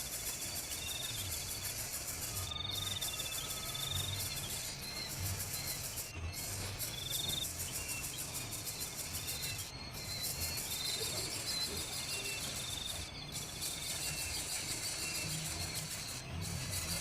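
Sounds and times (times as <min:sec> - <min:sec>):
high trilled chirps: 0:00.0 - 0:17.0
insects chorus: 0:00.0 - 0:17.0.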